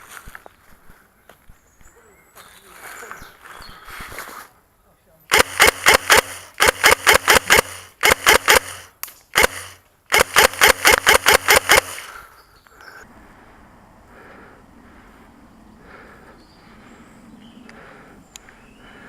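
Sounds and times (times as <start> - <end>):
gearbox motor hum: 5.3 - 12.1
airsoft gun firing bursts: 5.3 - 12.2.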